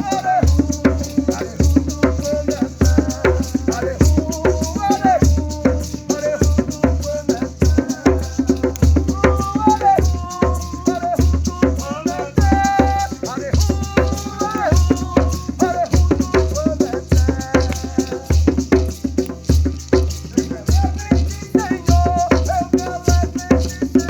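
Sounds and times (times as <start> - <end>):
person singing: 0.0 - 18.7
maraca rattles: 0.0 - 24.0
steady low drum beat: 0.0 - 24.0.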